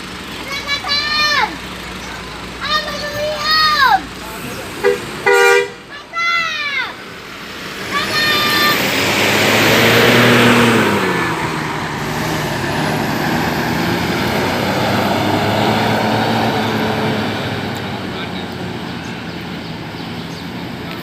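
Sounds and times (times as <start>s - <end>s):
bus engine and tyre noise: 0.0s - 21.0s
traffic rumble: 0.0s - 21.0s
bus horn note: 4.8s - 5.9s.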